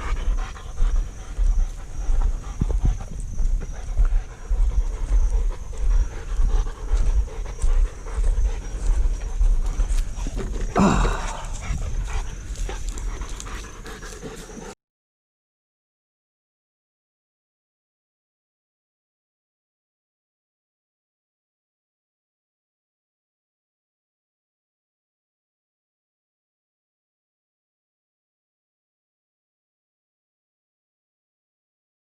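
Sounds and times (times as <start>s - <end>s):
dog panting hard: 0.0s - 14.8s.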